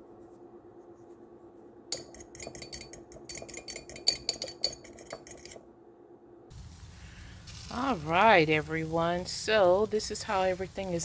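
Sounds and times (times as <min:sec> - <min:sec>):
faint steady hum: 0:00.0 - 0:11.0
metal utensil clinking on bowl: 0:01.9 - 0:05.6.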